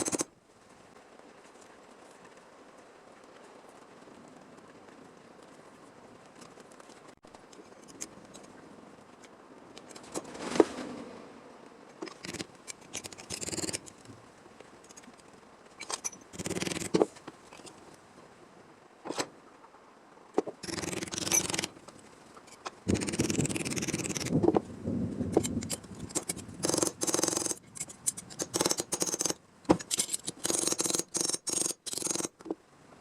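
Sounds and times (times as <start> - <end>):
snipping and scraping metal: 0.0 - 0.3, 11.9 - 14.0, 15.8 - 17.8, 20.6 - 21.8, 25.3 - 32.6.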